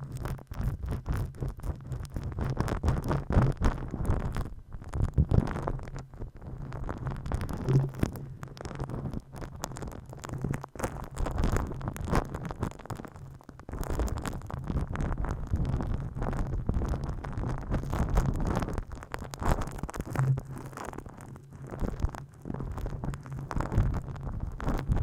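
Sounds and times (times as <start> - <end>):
hands rubbing microphone: 7.4 - 8.3.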